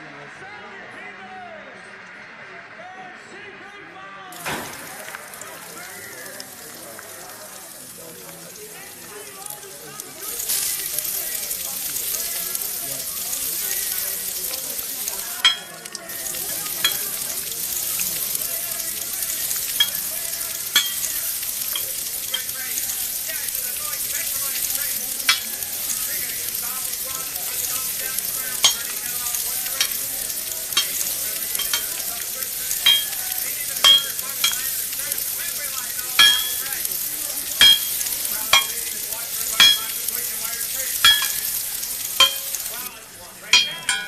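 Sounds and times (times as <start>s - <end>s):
metal spatula striking pan: 4.4s - 5.1s, 10.4s - 37.0s, 37.6s - 42.9s, 43.5s - 44.0s
noodles sizzling in a wok: 4.4s - 44.0s.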